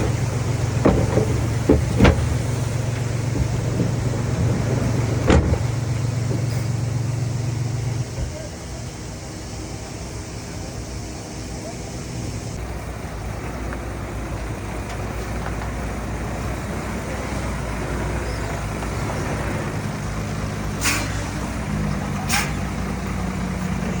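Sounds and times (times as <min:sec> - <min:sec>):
heavy diesel machinery droning: 0:00.0 - 0:24.0
short hisses: 0:20.8 - 0:21.4, 0:22.3 - 0:22.6.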